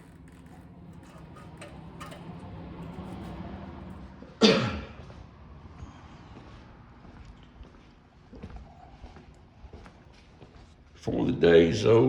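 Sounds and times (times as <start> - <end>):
person coughing: 4.4 - 5.0.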